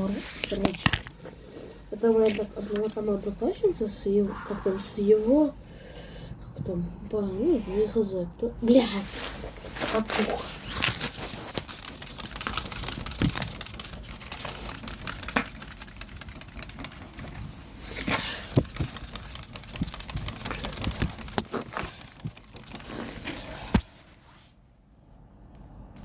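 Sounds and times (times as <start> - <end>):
dry material rustling: 9.0 - 24.4.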